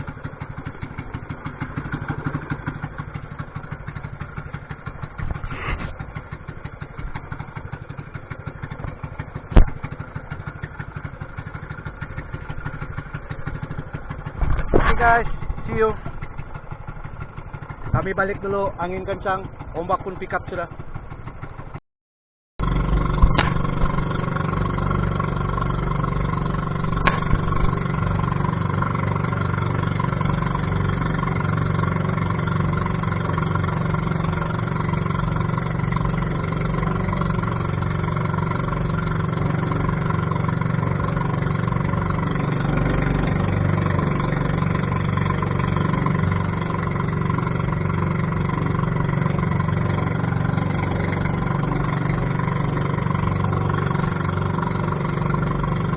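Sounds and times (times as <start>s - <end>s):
boat engine running: 0.0s - 21.8s, 22.6s - 55.9s
sharp knocks: 23.2s - 24.0s, 26.9s - 27.8s.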